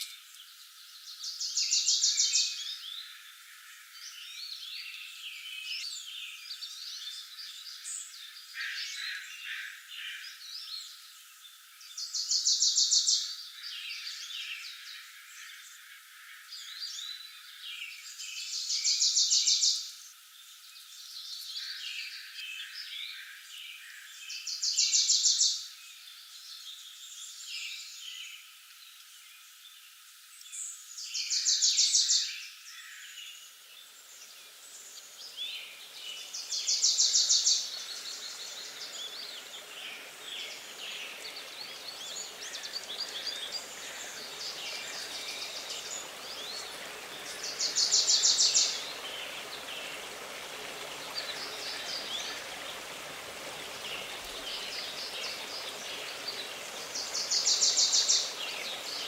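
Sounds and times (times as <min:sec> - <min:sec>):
background hiss: 0:00.0 - 0:59.0
birds chirping softly: 0:00.0 - 0:59.0.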